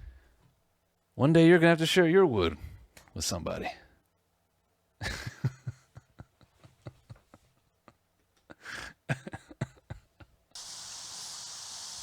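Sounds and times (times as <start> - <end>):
man chuckling: 5.0 - 10.5
steady hiss: 10.5 - 12.0.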